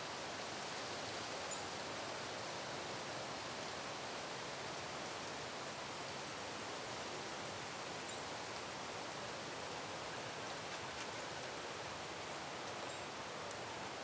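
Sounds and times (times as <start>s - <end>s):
outdoor background hiss: 0.0s - 14.0s.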